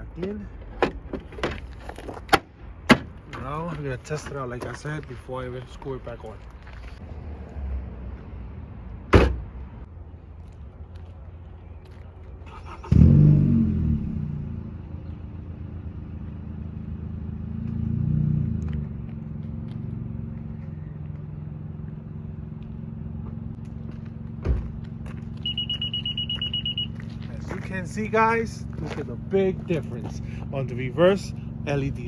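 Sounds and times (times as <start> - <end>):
thud: 9.1 - 9.5, 24.4 - 24.8
car engine starting and idling: 12.4 - 32.0
steady high beeping: 25.4 - 27.2.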